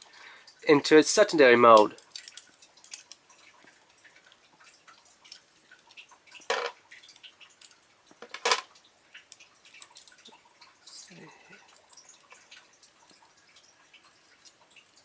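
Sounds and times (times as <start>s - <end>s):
small plastic parts clicking: 1.8s - 3.2s, 6.5s - 10.3s.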